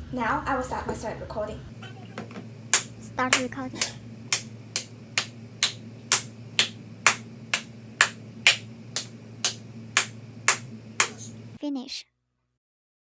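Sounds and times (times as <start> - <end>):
person clapping hands: 3.8 - 11.2.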